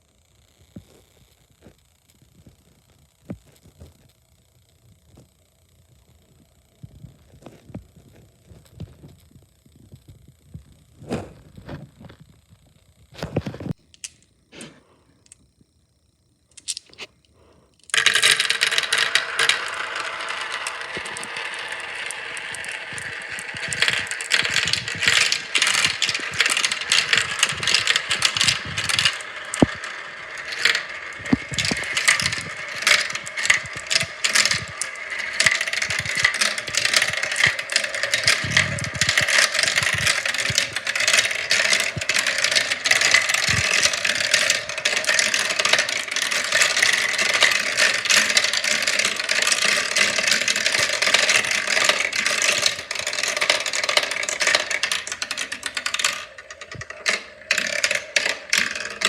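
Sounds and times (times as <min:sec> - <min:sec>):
marbles rattling down marble run: 0:17.9 - 0:59.0.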